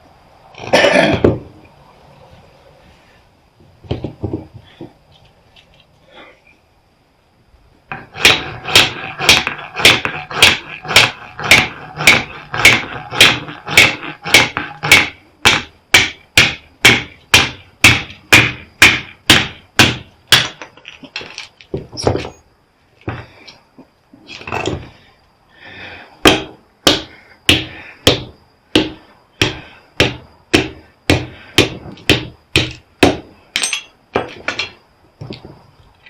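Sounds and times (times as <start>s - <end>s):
hammer striking metal: 7.9s - 20.6s, 26.3s - 34.8s.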